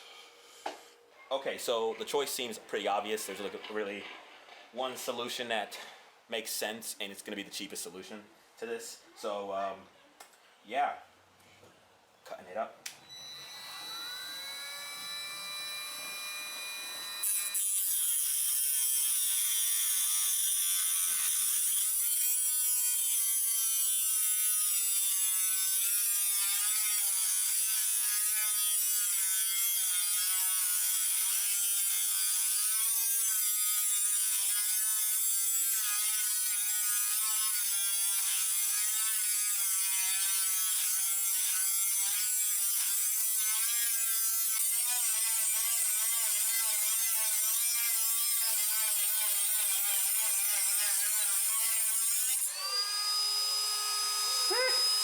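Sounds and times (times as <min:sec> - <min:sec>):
rotary tool cutting metal: 0:13.1 - 0:55.0.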